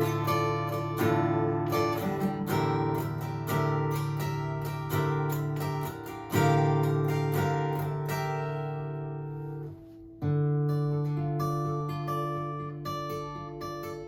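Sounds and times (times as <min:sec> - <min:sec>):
acoustic guitar chords ringing: 0:00.0 - 0:14.0.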